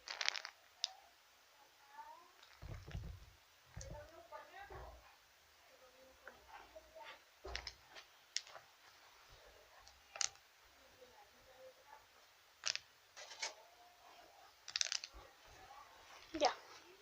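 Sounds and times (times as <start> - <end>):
chocolate packaging crinkling: 0.0 - 1.0, 2.4 - 4.1, 7.4 - 8.6, 9.8 - 10.4, 12.6 - 13.5, 14.6 - 15.2.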